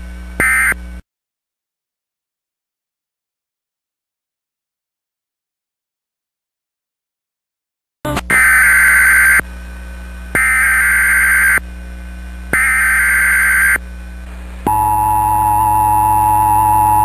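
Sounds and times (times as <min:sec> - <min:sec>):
digital data tone bursts: 0:10.4 - 0:11.6, 0:12.6 - 0:13.8, 0:14.7 - 0:17.0
two-tone attention signal: 0:14.7 - 0:17.0.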